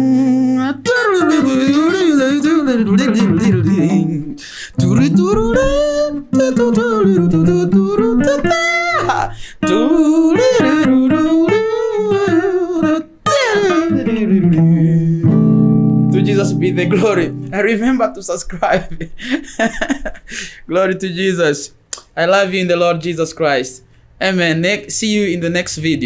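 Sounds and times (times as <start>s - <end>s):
guitar melody with sliding notes: 0.0s - 17.7s.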